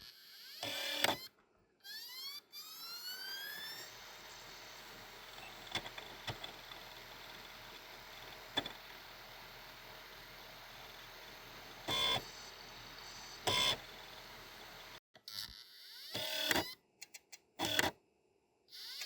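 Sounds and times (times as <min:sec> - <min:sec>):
optical drive spinning up: 0:00.6 - 0:01.3, 0:02.5 - 0:15.0.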